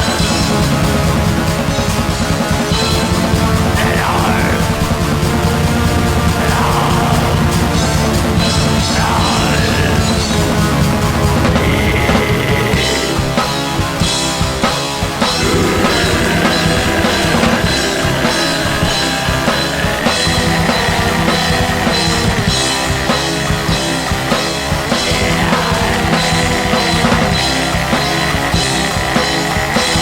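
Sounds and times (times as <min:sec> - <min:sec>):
distorted guitars: 0:00.0 - 0:30.0
fast metal drumming: 0:00.0 - 0:30.0
sustained high synth line: 0:15.3 - 0:22.8.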